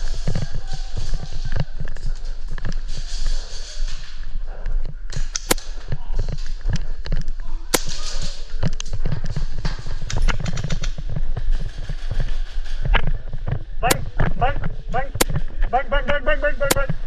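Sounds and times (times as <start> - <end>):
airsoft guns firing: 7.7 - 8.6.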